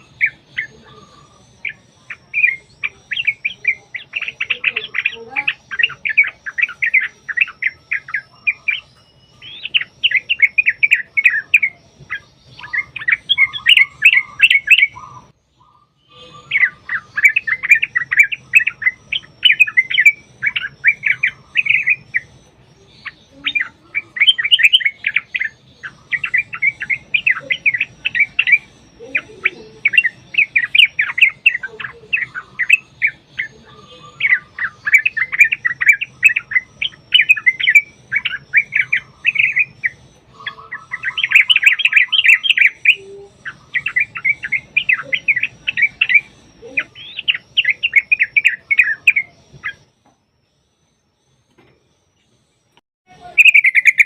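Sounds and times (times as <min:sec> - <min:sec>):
bird chattering song: 0:00.0 - 0:54.0.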